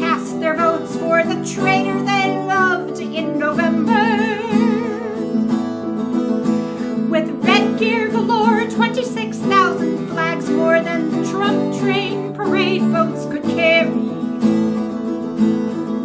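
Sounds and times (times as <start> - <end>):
strummed acoustic guitar: 0.0 - 16.0.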